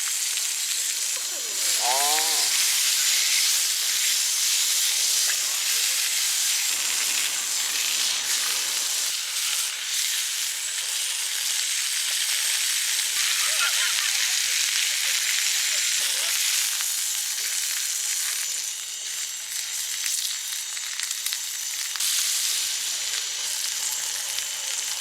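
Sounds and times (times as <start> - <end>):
food sizzling in pan: 0.0 - 25.0
person speaking: 1.0 - 2.8.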